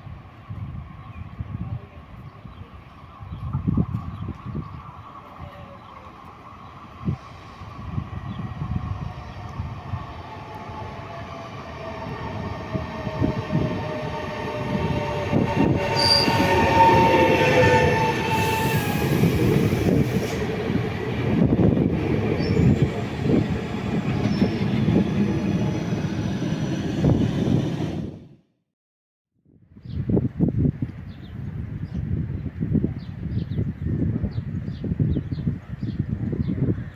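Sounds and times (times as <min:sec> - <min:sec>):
train wheels rumbling on rails: 0:03.3 - 0:28.3
high whining tones: 0:10.9 - 0:21.0
wheel squeal: 0:15.5 - 0:19.3.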